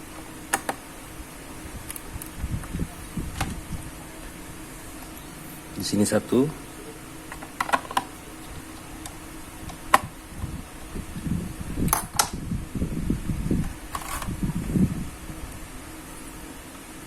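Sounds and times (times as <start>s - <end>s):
steady fan hum: 0.0s - 17.0s
handling rustling: 13.6s - 14.4s.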